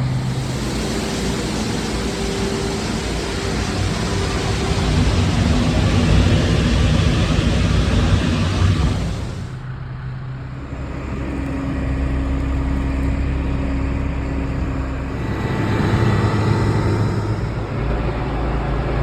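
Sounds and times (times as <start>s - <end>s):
loud hiss: 0.0s - 9.6s, 15.1s - 17.8s
farm machinery engine humming: 0.0s - 18.6s.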